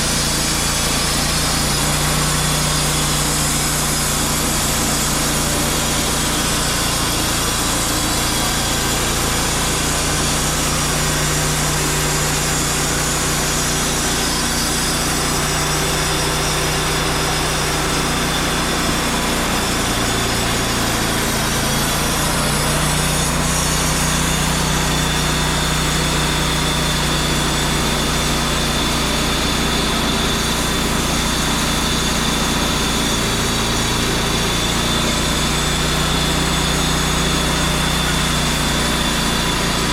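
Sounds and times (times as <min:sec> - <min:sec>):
band sawmill running: 0:00.0 - 0:39.9.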